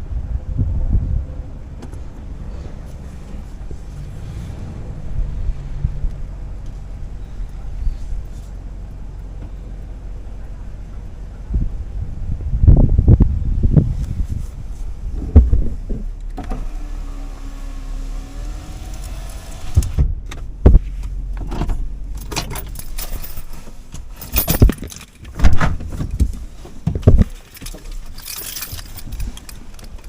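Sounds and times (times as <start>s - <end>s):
low steady hum: 0.0s - 30.0s
keys jangling: 22.2s - 25.4s, 27.2s - 30.0s.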